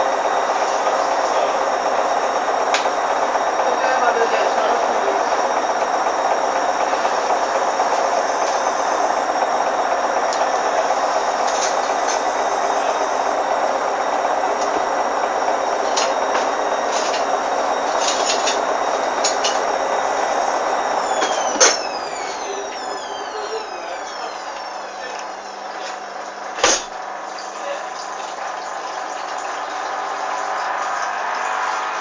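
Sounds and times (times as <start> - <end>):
motor winding down: 0.0 - 32.0
washing machine spinning: 0.0 - 32.0.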